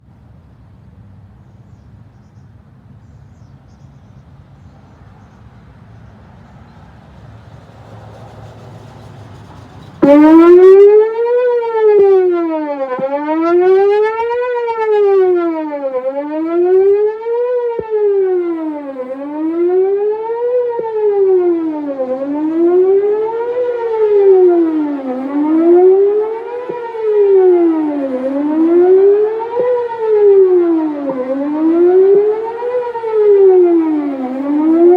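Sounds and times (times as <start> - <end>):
warning siren sweeping: 10.0 - 34.9.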